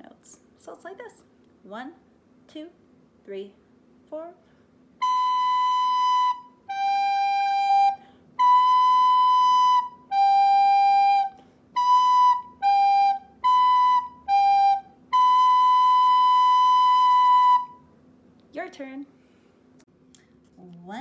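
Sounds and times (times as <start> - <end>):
recorder playing two notes: 5.0 - 17.8.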